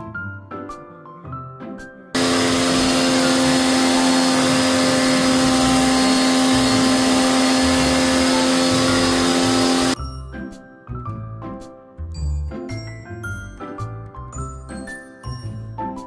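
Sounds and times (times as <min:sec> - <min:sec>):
cleaning machine motor hissing: 0:02.2 - 0:10.0.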